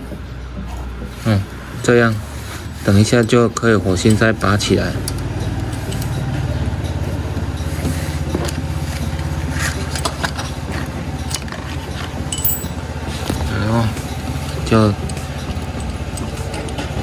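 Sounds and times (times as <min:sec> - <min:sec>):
vehicle engine humming: 0:00.0 - 0:17.0
metallic tool clicks and scrapes: 0:02.5 - 0:07.0, 0:07.6 - 0:13.4.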